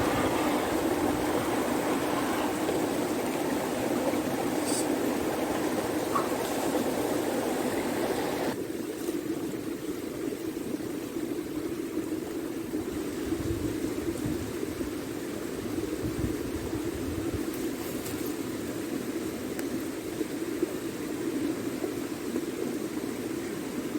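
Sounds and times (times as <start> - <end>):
bright wide hiss: 0.0 - 8.6
flooded river rushing: 0.0 - 8.6.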